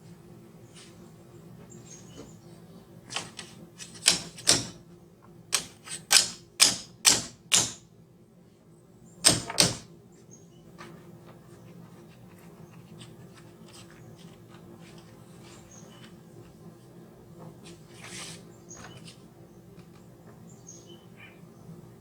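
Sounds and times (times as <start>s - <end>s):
hammer tapping on wood: 3.9s - 4.8s, 5.6s - 7.8s, 9.2s - 9.8s.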